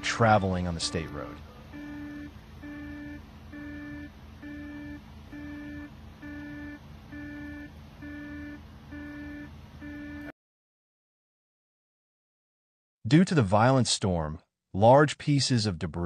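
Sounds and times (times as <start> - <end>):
electronic alarm beeping: 0.1 - 10.3.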